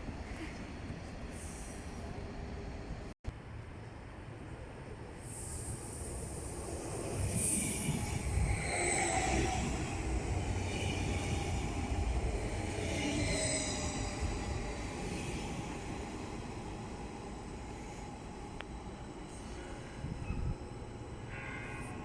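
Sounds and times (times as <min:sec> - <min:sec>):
train rail rumble: 0:04.8 - 0:22.0
high squealing wheels: 0:06.1 - 0:18.0.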